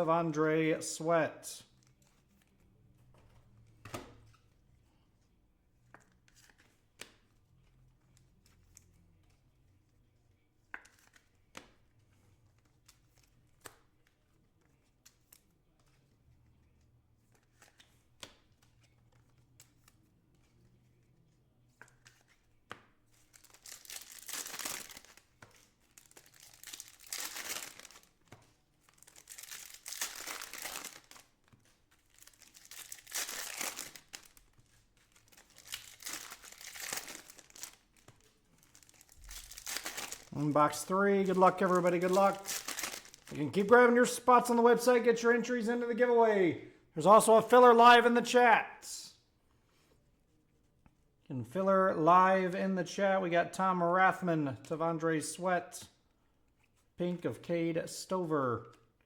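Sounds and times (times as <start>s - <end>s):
plastic wrapping tearing and crumpling: 23.3s - 28.2s, 28.9s - 43.4s.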